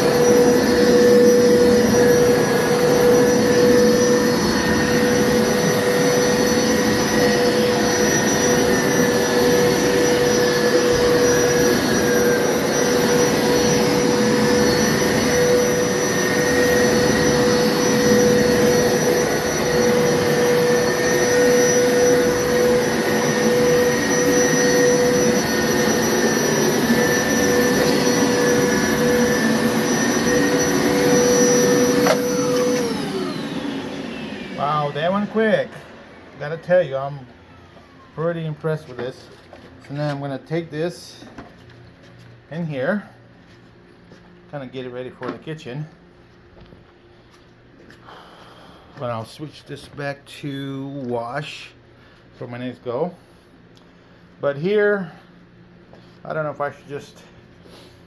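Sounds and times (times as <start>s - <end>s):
carpet washer motor whine: 0.0s - 41.6s.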